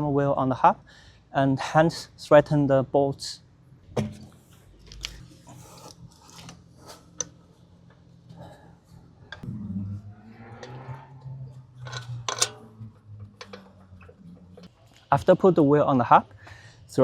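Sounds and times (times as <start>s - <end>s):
metal bolts clicking and scraping: 11.7s - 15.2s.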